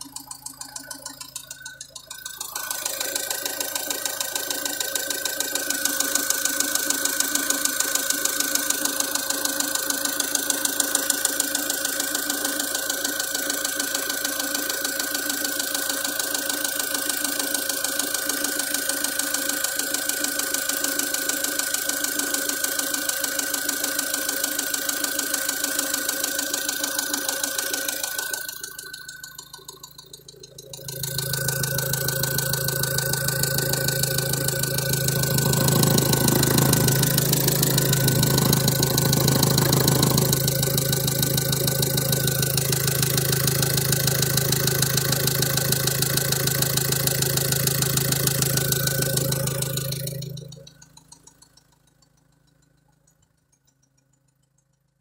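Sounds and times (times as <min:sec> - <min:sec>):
diesel engine idling: 0:00.0 - 0:11.2, 0:29.0 - 0:51.0.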